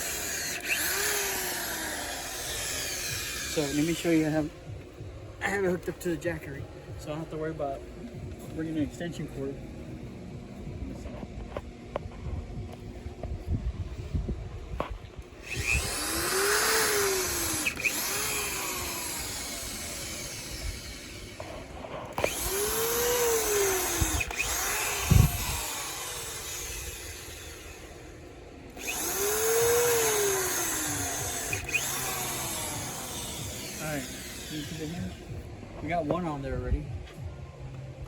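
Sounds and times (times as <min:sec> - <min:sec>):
electric drill whine: 0:00.0 - 0:04.4, 0:15.4 - 0:35.4.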